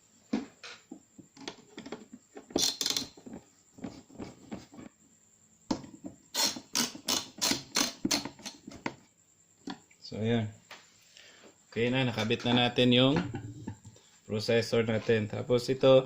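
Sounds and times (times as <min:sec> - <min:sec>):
screwdriver clicking on metal screws: 0:06.4 - 0:08.6.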